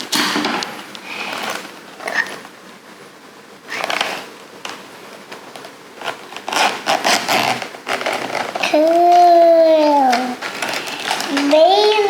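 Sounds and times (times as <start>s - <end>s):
packaging rustling and scraping: 3.7s - 12.0s.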